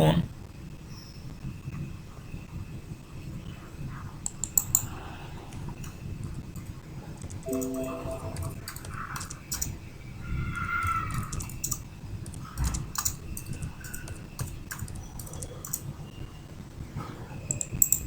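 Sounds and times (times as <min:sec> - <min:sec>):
computer keyboard typing: 0:11.1 - 0:15.9, 0:17.5 - 0:18.0.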